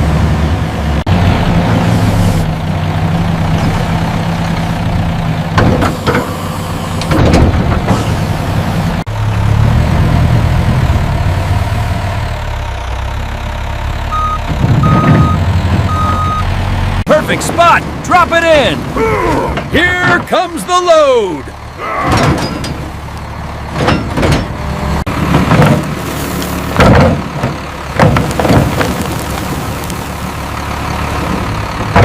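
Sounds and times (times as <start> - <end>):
excavator diesel engine running: 0.0 - 32.0
reversing beeps: 14.1 - 16.5.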